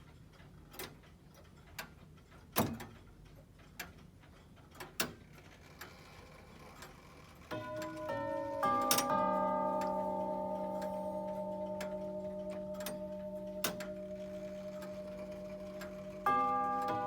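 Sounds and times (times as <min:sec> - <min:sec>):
clock pendulum ticking: 0:00.0 - 0:17.0
tubular chime bells ringing: 0:07.6 - 0:17.0.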